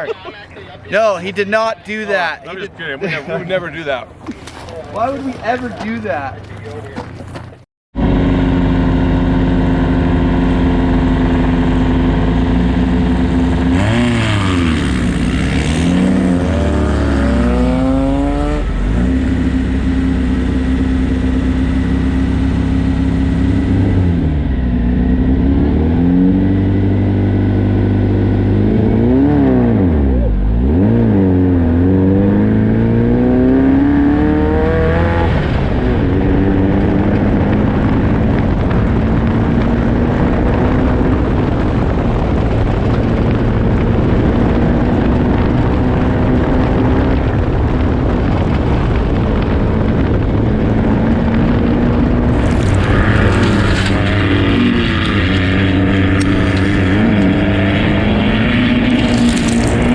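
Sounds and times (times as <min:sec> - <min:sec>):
race car engine revving: 0:03.9 - 0:59.9.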